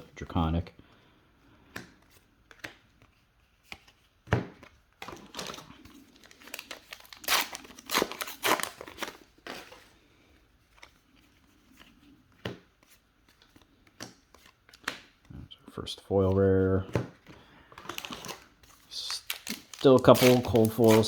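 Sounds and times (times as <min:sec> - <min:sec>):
foil wrapper tearing and crinkling: 0:05.2 - 0:09.8, 0:17.8 - 0:21.0.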